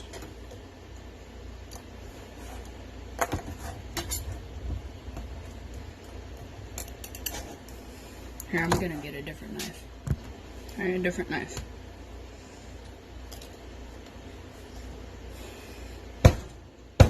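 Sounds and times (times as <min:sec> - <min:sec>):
low steady rumble: 0:00.0 - 0:17.0.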